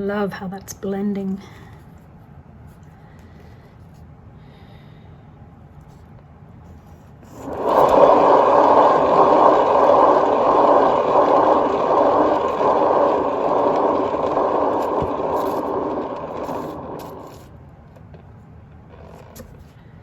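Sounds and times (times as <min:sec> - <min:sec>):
hair dryer blowing: 0:07.3 - 0:17.5.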